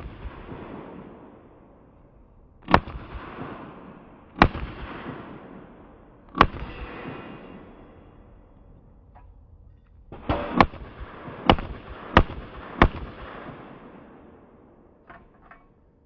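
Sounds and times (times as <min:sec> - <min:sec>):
pistol shots with echo: 0:00.0 - 0:09.1, 0:10.1 - 0:15.1.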